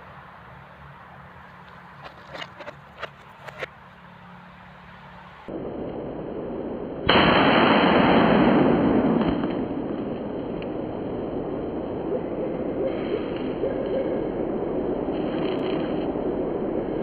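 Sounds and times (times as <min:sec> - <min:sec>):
firecracker blast: 0:07.0 - 0:11.7.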